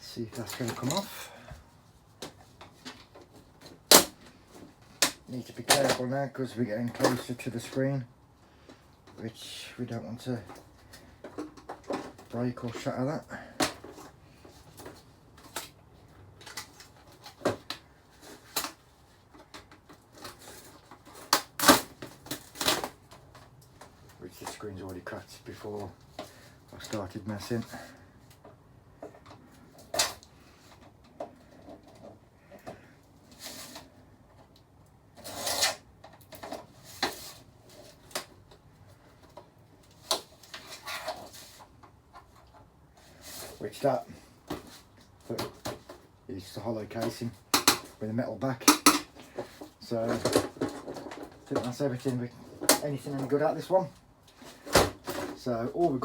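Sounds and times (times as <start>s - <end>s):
plastic and metal parts clattering: 0.2s - 1.4s, 2.2s - 8.0s, 10.2s - 56.0s
scraping and rubbing of casing: 13.6s - 24.6s, 35.1s - 46.2s.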